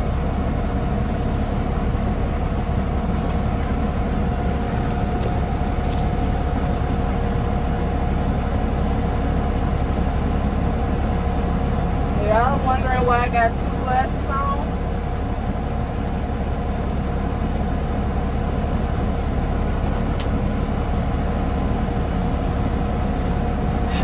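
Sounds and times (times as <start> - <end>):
diesel engine rumbling: 0.0 - 24.0.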